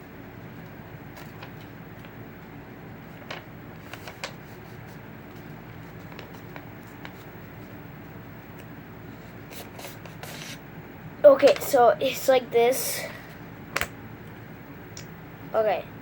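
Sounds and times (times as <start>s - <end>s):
low background hum: 0.0s - 16.0s
paper crinkling and folding: 1.1s - 2.2s, 3.0s - 7.8s, 8.5s - 10.6s.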